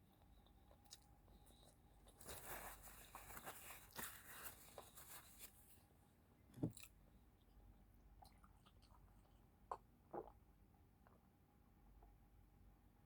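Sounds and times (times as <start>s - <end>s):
rustling and crinkling: 0.8s - 6.0s.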